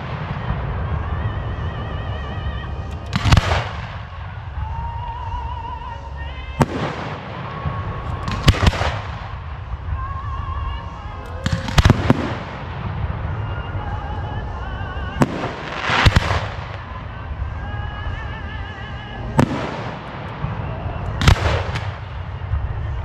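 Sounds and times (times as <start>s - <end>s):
firework shells bursting: 2.9s - 4.2s.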